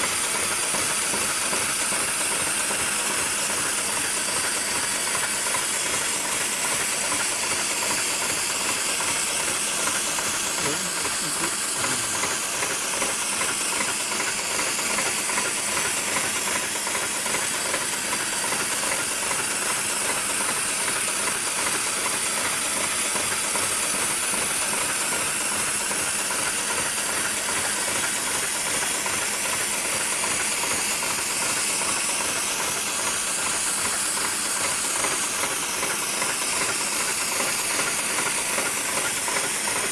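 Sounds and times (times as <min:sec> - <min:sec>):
machine noise: 0:00.0 - 0:39.9
steady mechanical hiss: 0:07.0 - 0:17.8.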